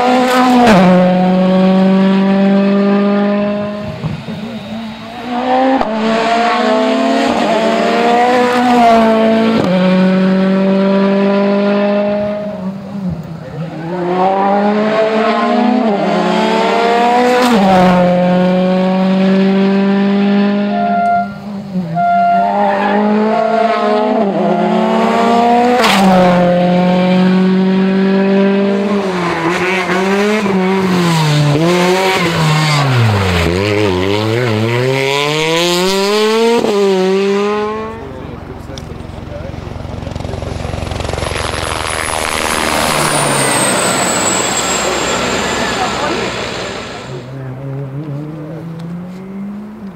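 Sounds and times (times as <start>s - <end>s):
rally car engines accelerating: 0.0s - 49.9s.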